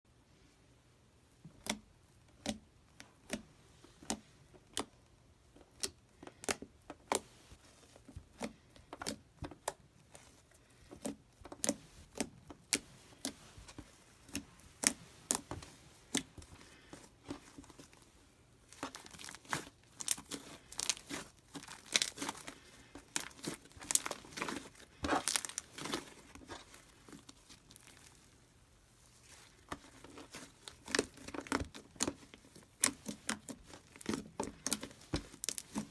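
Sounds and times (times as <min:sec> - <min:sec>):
slime squeezed with sticky pops: 0:18.7 - 0:28.1, 0:29.3 - 0:35.9.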